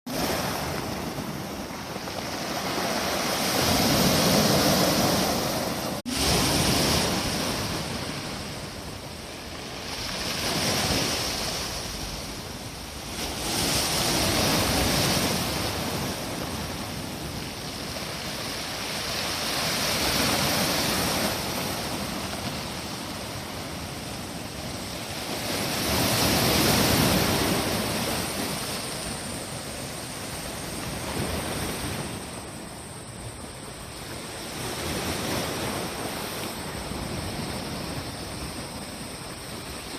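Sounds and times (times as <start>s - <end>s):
waves breaking on shore: 0.1s - 39.9s.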